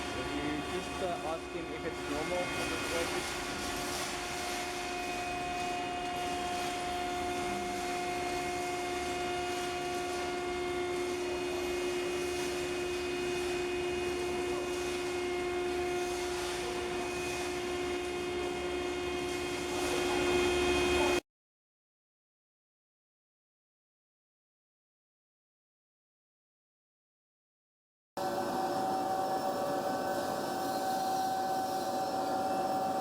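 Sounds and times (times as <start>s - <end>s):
drilling machine humming: 28.2s - 33.0s.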